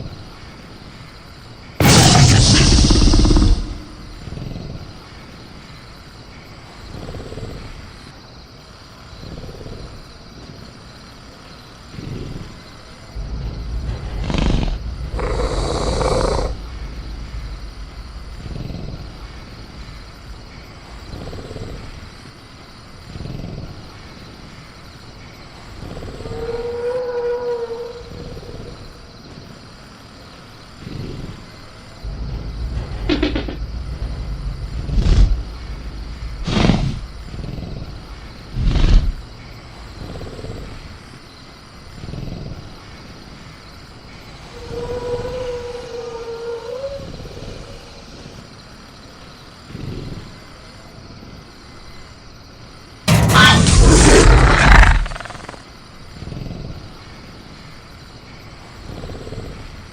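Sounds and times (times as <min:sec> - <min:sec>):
crickets chirping: 0:00.0 - 0:59.9
dinosaur pitched call: 0:01.8 - 0:04.3, 0:44.4 - 0:47.5, 0:53.1 - 0:55.6
dinosaur roar: 0:01.8 - 0:04.6, 0:13.2 - 0:19.9, 0:32.0 - 0:39.2, 0:44.4 - 0:48.1, 0:53.1 - 0:55.6
dinosaur growling rumbles: 0:01.8 - 0:04.9, 0:13.2 - 0:22.2, 0:32.0 - 0:40.9, 0:53.1 - 0:55.6.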